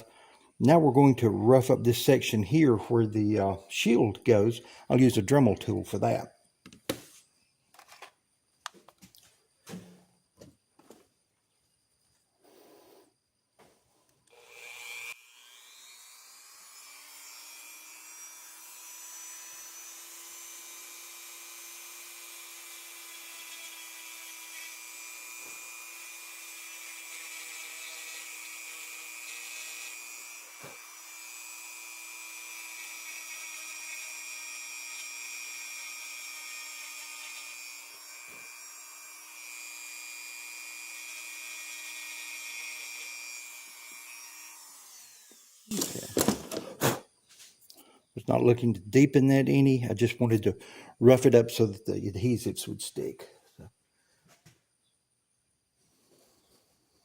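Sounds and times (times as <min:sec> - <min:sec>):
rotary tool high whine: 0:14.2 - 0:47.0.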